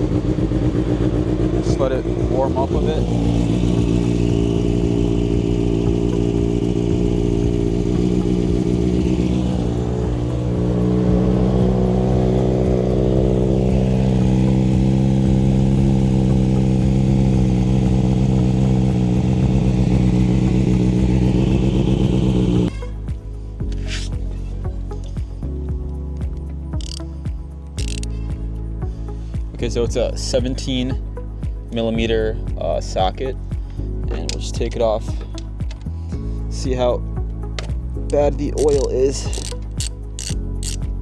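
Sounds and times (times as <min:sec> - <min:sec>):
motorcycle engine idling: 0:00.0 - 0:22.7, 0:27.8 - 0:29.5.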